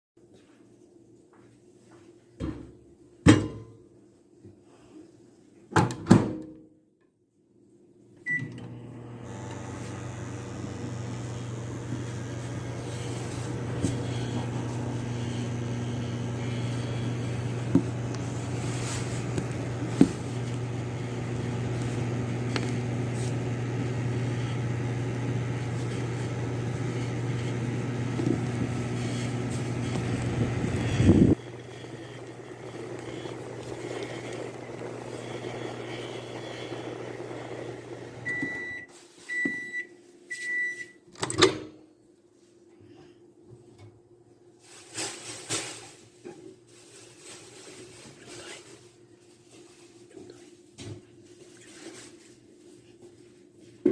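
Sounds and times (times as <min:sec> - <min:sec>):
microwave beep: 0:08.2 - 0:18.6, 0:34.4 - 0:41.0
microwave oven humming: 0:08.2 - 0:39.8.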